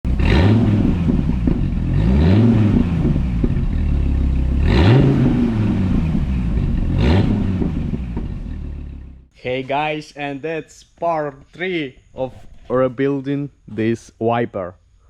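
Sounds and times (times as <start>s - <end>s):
car engine idling: 0.1s - 9.3s
car engine revving: 0.1s - 9.3s.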